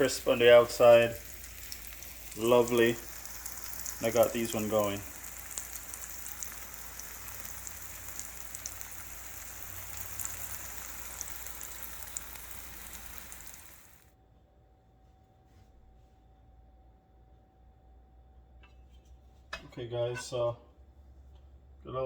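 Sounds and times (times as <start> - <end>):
deep-frying oil sizzling: 0.0 - 14.1.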